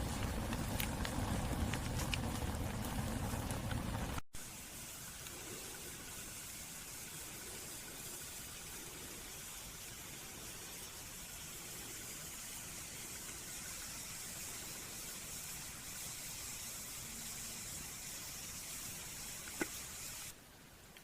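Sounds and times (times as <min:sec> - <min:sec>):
fire popping: 0:00.0 - 0:04.2
campfire hissing: 0:00.0 - 0:20.4.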